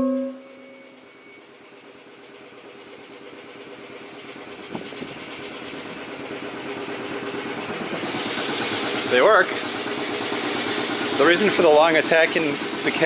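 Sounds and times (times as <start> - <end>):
horn ringing: 0.0 - 1.4
air compressor motor hum: 0.0 - 13.0.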